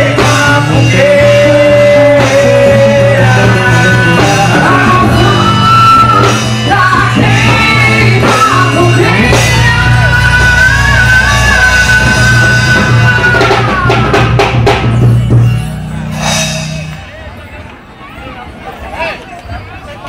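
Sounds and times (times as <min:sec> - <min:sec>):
loud music with singing: 0:00.0 - 0:17.0
drum hits: 0:12.1 - 0:17.2.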